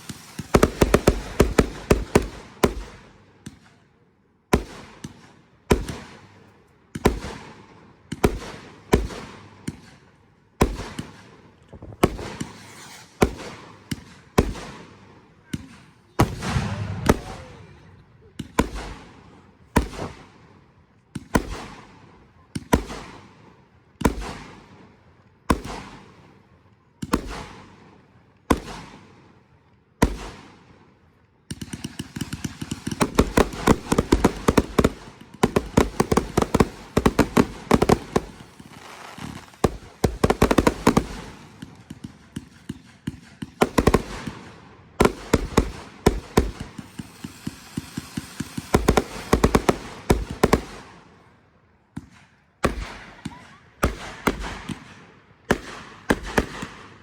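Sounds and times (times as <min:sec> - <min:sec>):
fireworks bursts echoing: 0:00.0 - 0:03.8, 0:10.6 - 0:20.2, 0:31.5 - 0:57.0
fireworks barrage of bangs and crackles: 0:00.0 - 0:26.4, 0:27.0 - 0:29.4, 0:30.0 - 0:30.8, 0:31.5 - 0:57.0.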